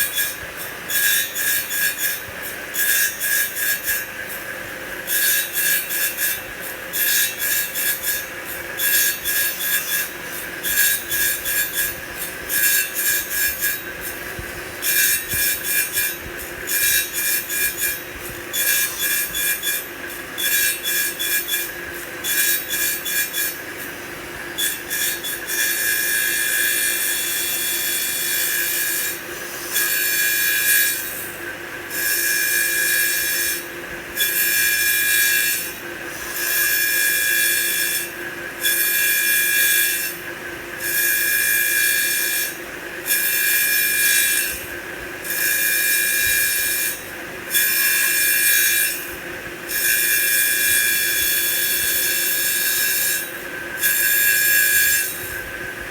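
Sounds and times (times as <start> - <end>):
lathe cutting wood: 8.8 - 31.3, 31.9 - 40.2, 49.7 - 55.9.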